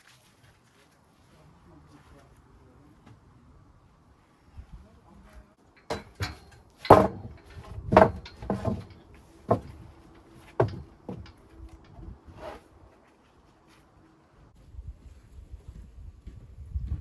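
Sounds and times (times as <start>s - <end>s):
irregular knocks and clunks: 5.8s - 12.0s.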